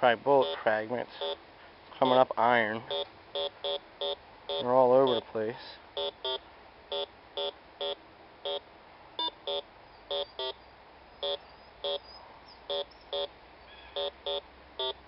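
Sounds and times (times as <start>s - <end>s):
metal detector beeping: 0.4s - 1.4s, 2.9s - 5.3s, 6.0s - 10.6s, 11.2s - 13.3s, 13.9s - 15.0s.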